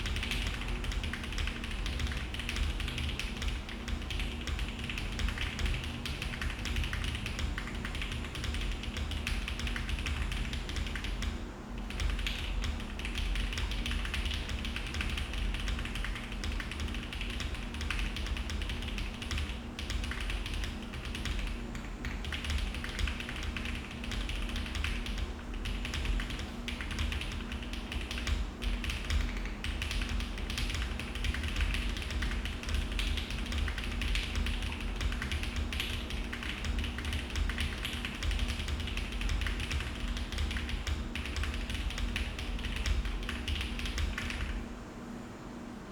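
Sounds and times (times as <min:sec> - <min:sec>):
fast typing on mechanical keyboard: 0:00.0 - 0:44.6.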